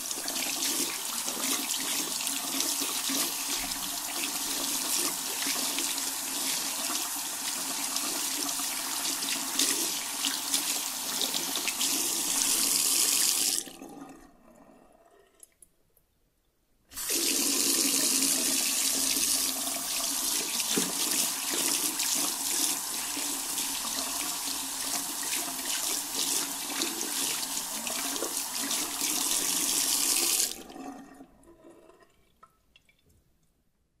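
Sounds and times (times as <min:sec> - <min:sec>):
tap water running into basin: 0:00.0 - 0:14.3, 0:16.9 - 0:33.1
hands washing under water: 0:20.2 - 0:24.2
water dripping: 0:32.0 - 0:33.5.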